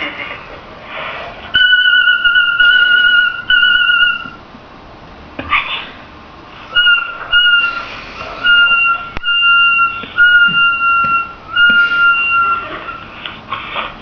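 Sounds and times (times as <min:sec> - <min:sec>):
high-pitched whistle tone: 0:01.6 - 0:04.4, 0:06.7 - 0:13.1.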